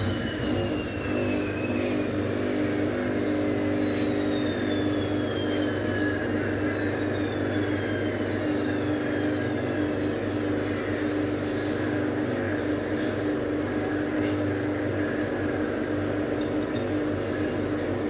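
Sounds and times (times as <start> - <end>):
high-pitched squeal: 0.0 - 12.0
washing machine spin hum: 0.0 - 18.0.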